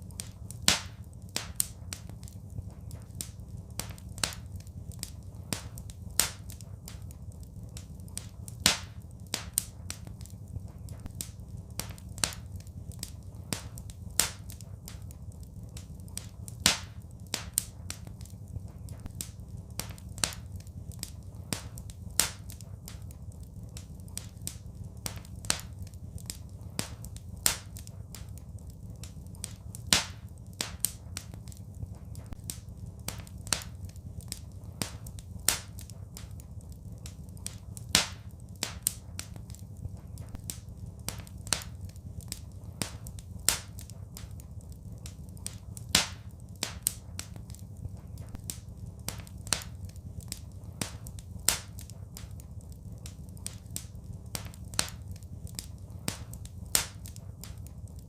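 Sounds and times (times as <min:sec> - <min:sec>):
wood fire crackling and popping: 0:00.0 - 0:58.0
low rumble: 0:00.1 - 0:45.9.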